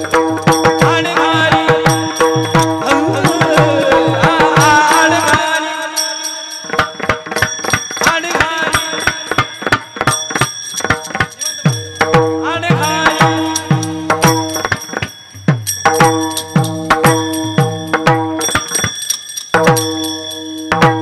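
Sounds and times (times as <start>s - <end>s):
drum beating fast rhythm: 0.0s - 21.0s
sliding melody line: 7.4s - 20.4s.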